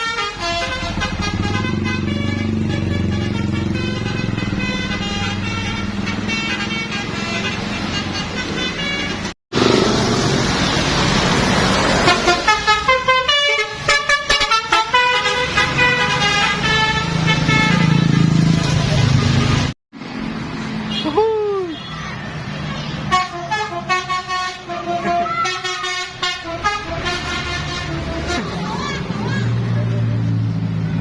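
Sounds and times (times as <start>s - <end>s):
multi-tone musical bus horn: 0.0s - 9.4s, 12.0s - 19.7s, 22.8s - 29.0s.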